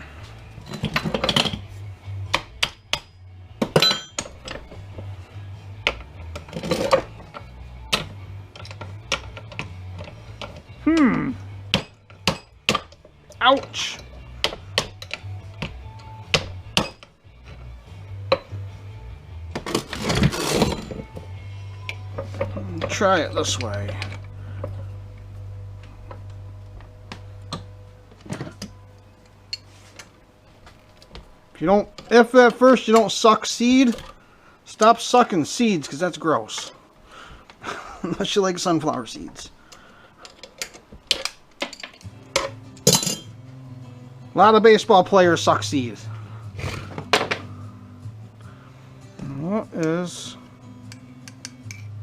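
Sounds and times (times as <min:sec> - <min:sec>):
low steady hum: 0:00.0 - 0:44.4
steady low hum: 0:20.6 - 0:32.2
light metal clicks and taps: 0:50.9 - 0:51.9.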